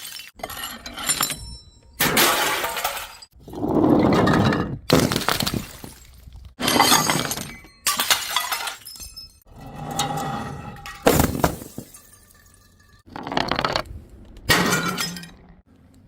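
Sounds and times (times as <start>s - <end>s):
glass bottles smashing: 0.0s - 3.4s, 4.9s - 9.5s, 10.8s - 13.1s
glass shards tinkling: 7.0s - 9.5s.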